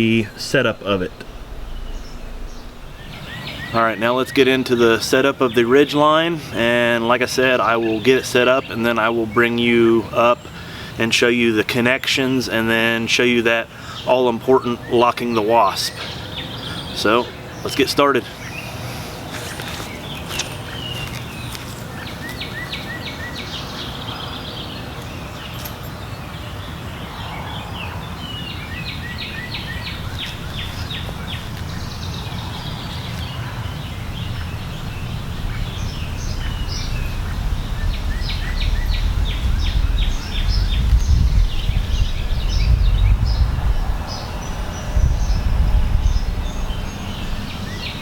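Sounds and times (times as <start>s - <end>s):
low rumble: 0.0s - 4.3s, 29.3s - 48.0s
birds trilling chirps: 0.0s - 48.0s.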